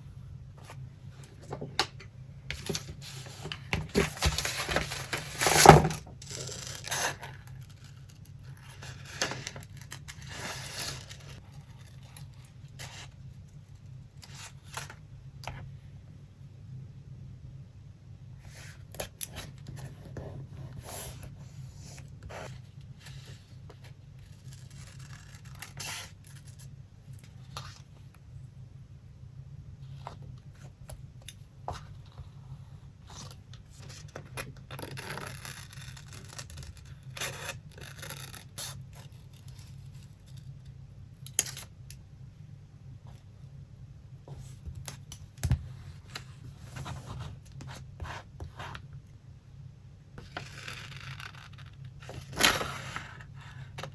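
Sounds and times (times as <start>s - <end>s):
paper rustling: 2.5s - 7.0s.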